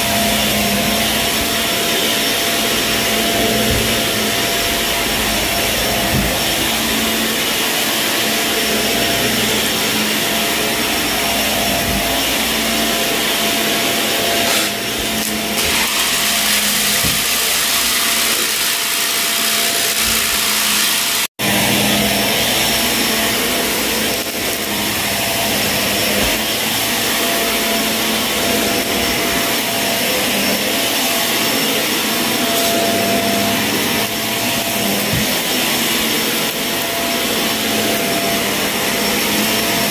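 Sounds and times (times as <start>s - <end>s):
vacuum cleaner running: 0.0s - 39.9s.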